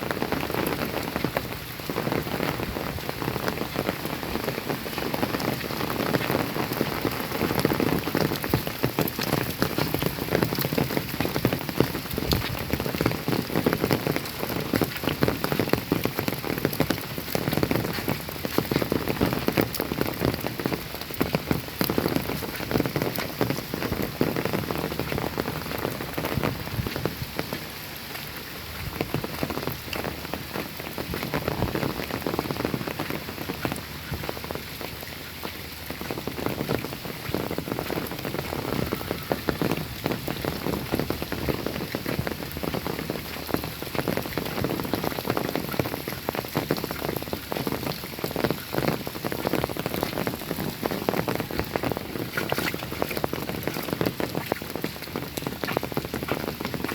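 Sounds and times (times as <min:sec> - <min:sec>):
rain falling: 0:00.0 - 0:56.9
raindrops pattering on surfaces: 0:00.0 - 0:56.9.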